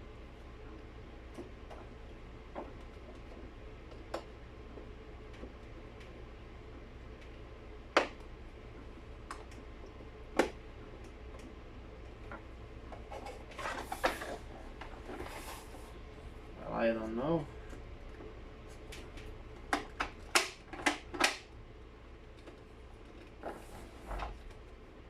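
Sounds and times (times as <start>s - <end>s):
parts scraping and rattling: 12.2s - 15.8s.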